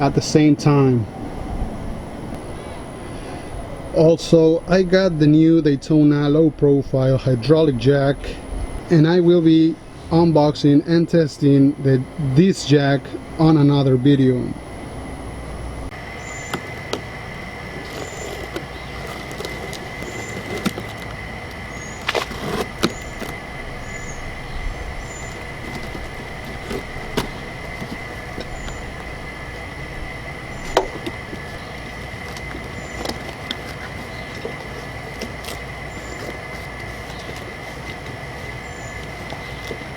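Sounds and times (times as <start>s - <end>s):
high-pitched whine: 0.0s - 39.9s
packaging knocks and clicks: 16.4s - 23.5s, 25.0s - 39.9s.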